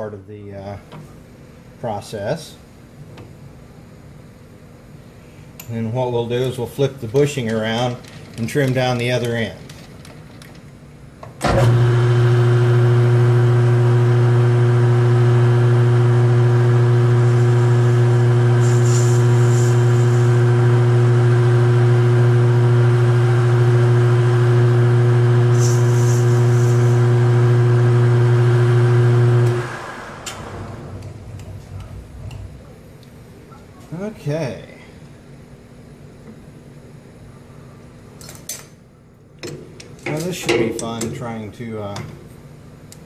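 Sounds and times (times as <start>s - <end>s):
lathe motor hum: 11.5s - 32.6s.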